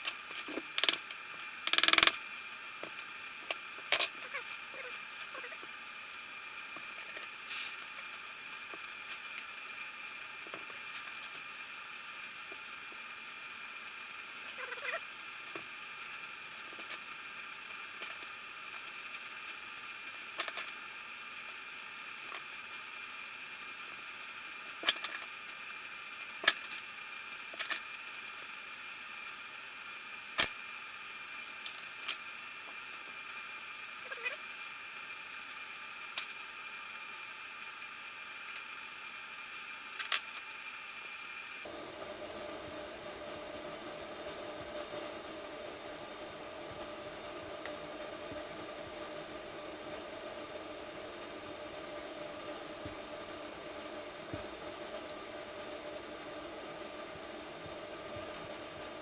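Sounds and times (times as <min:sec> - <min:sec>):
steady background hiss: 0:41.7 - 0:59.0.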